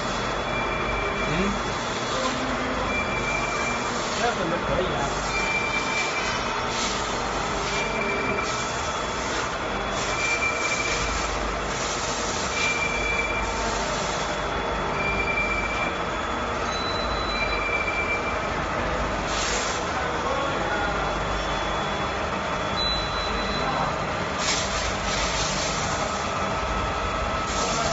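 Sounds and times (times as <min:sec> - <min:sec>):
lathe machining noise: 0:00.0 - 0:16.7, 0:24.0 - 0:27.9.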